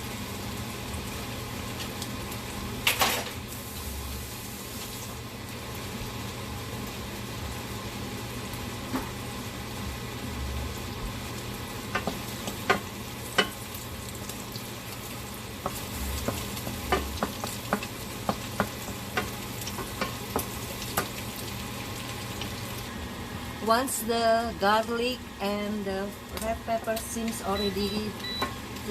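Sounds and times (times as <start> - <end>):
garlic sizzling in frying pan: 0.0 - 23.6
utensil tapping against pan: 15.6 - 21.1.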